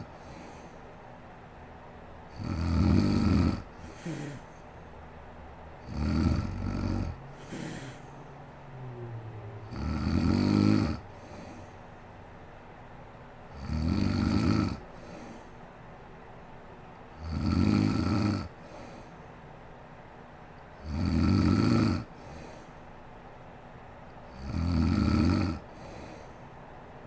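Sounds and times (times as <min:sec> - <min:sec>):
soft breath: 0:00.0 - 0:01.2, 0:03.7 - 0:05.0, 0:07.1 - 0:09.7, 0:11.0 - 0:12.2, 0:14.9 - 0:15.9, 0:18.6 - 0:19.4, 0:22.1 - 0:23.1, 0:25.6 - 0:26.8
woman snoring: 0:02.3 - 0:04.4, 0:05.9 - 0:11.6, 0:13.6 - 0:14.8, 0:17.2 - 0:18.5, 0:20.8 - 0:22.4, 0:24.3 - 0:26.1.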